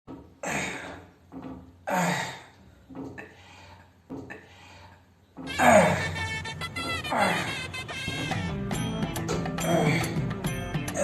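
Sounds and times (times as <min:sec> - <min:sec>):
person grunting and groaning: 0:09.6 - 0:10.3.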